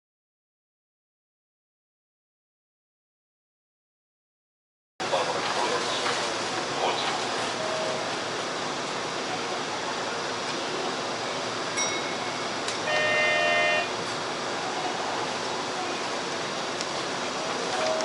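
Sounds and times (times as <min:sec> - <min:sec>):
train standing at platform: 0:05.0 - 0:18.0.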